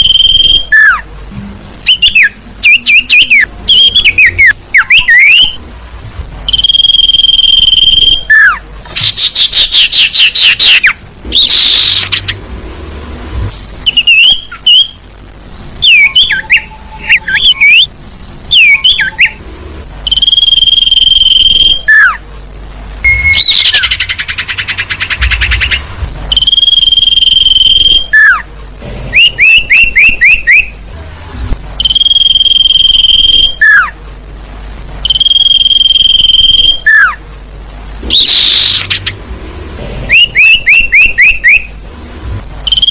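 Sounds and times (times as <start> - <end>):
owl high whistles: 0.0 - 1.0, 1.9 - 5.6, 6.5 - 12.3, 13.8 - 15.0, 15.8 - 17.9, 18.5 - 19.4, 20.1 - 22.2, 23.0 - 28.4, 29.1 - 30.8, 31.8 - 34.0, 35.1 - 37.2, 38.1 - 39.0, 40.1 - 41.7
bird trills and chirps: 0.0 - 1.1, 1.8 - 5.6, 6.5 - 12.4, 13.5 - 17.9, 18.5 - 19.4, 20.0 - 22.2, 23.0 - 28.5, 29.1 - 30.9, 31.8 - 34.0, 35.0 - 37.2, 38.1 - 39.2, 40.1 - 41.9, 42.7 - 42.9.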